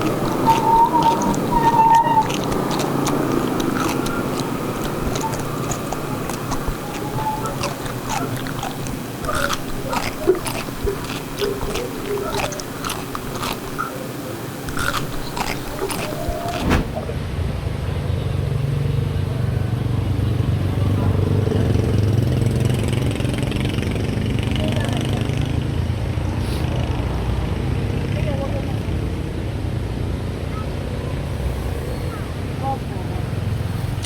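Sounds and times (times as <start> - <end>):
close chewing and crunching: 0.0 - 17.0.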